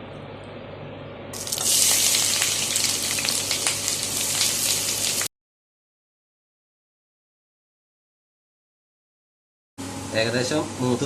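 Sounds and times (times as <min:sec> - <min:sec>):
onions sizzling in hot oil: 0:01.4 - 0:05.3.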